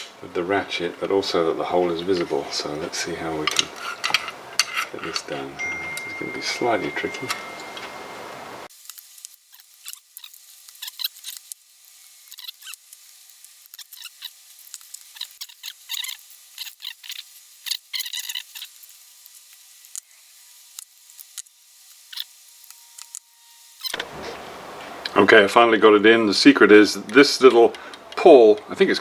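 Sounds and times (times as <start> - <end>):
metal rattle: 1.2 - 8.7
small metal parts clicking: 1.8 - 8.1.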